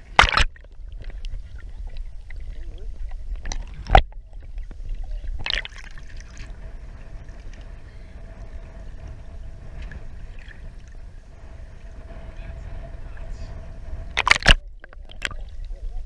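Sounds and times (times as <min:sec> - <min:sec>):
water splash: 0:00.0 - 0:06.6, 0:14.1 - 0:15.6
faint steady hum: 0:00.0 - 0:16.0
water lapping against boat: 0:00.0 - 0:16.0
wind on microphone: 0:00.0 - 0:16.0.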